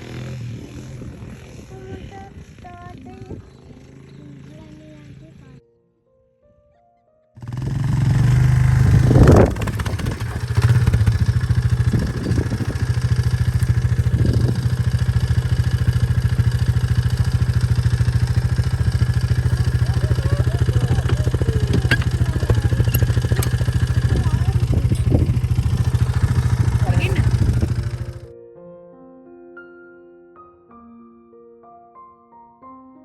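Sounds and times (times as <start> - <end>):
vehicle engine running: 7.4 - 28.3.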